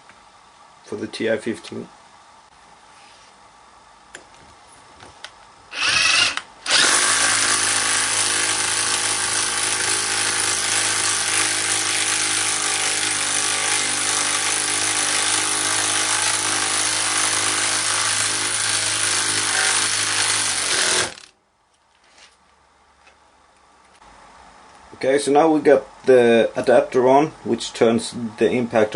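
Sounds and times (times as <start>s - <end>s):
impact driver hammering screw: 5.8s - 21.3s.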